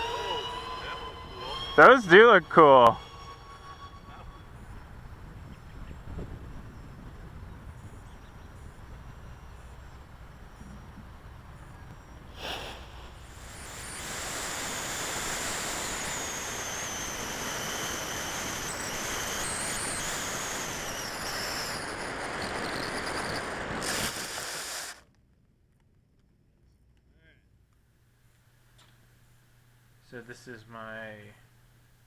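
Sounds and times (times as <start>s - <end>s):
rushing noise: 0.0s - 7.1s, 12.2s - 25.0s
electric ducted fans whining: 0.0s - 24.8s.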